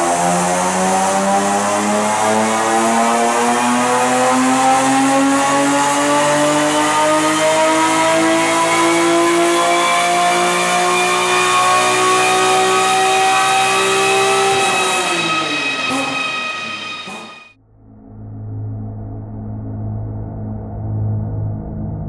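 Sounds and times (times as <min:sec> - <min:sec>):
car engine revving under load: 0:00.0 - 0:17.5.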